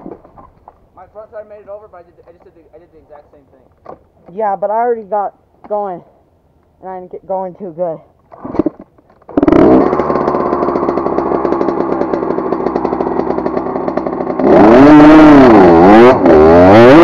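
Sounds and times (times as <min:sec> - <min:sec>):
dirt bike engine revving: 0:09.3 - 0:17.0.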